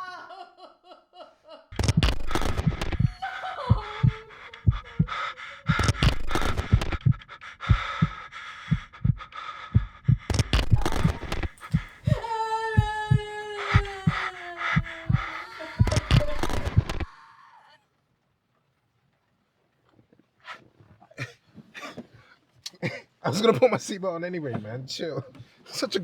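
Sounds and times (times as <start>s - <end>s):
heartbeat-like thumping: 1.8s - 17.1s.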